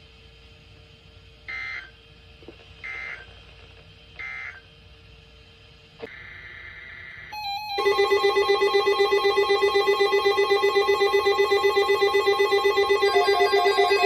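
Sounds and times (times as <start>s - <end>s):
faint steady tone: 7.3s - 14.0s
data bursts: 7.4s - 14.0s.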